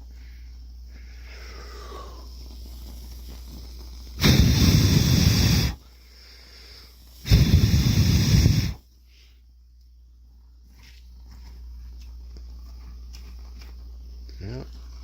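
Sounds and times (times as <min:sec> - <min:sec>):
storm match flaring hiss: 0:01.2 - 0:09.0.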